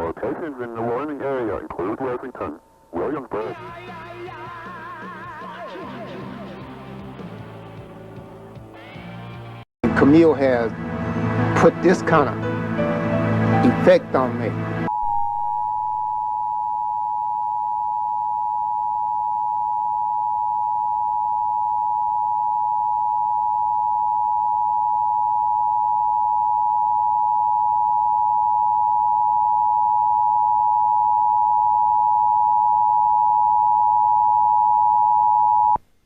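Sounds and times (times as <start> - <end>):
two-tone alarm: 14.9 - 35.8.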